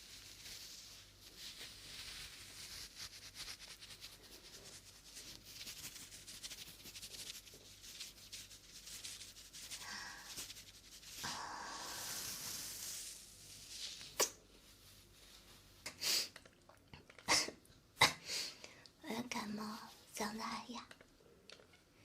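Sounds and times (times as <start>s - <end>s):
close rubbing and scratching: 0.0s - 16.0s.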